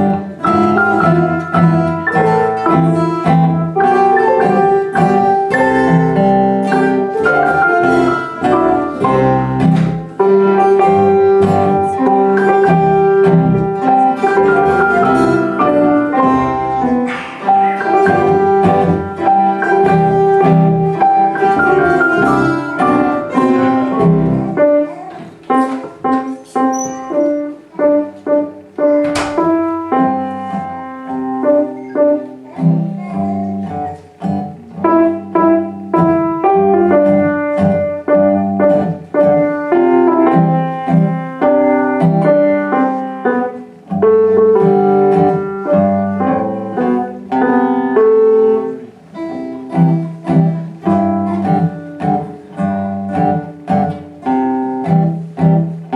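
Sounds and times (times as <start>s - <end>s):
instrumental ensemble music: 0.0s - 55.9s
piano: 0.0s - 55.9s
sharp knock: 29.0s - 29.4s.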